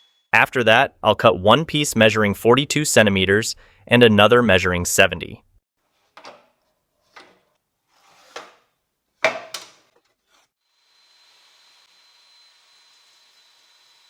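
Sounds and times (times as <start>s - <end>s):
wood sliding rub: 7.0s - 8.6s
wooden boards knocking: 9.2s - 9.9s.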